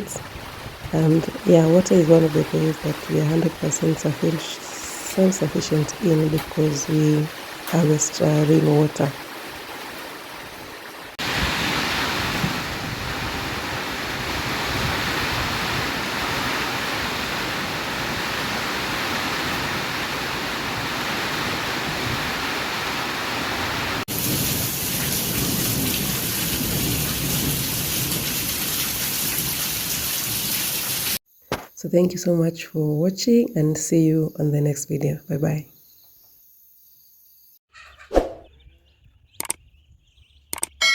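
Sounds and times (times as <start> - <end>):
heavy rain falling: 0.0 - 31.2.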